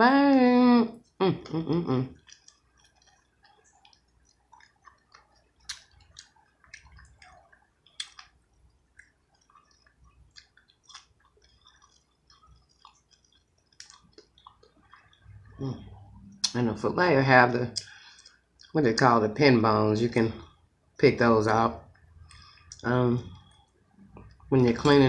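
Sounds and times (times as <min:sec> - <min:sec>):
small mouth clicks: 0:02.1 - 0:08.4, 0:09.0 - 0:16.6
wet chewing mouth sounds: 0:02.1 - 0:16.6, 0:17.7 - 0:19.1, 0:21.8 - 0:24.9.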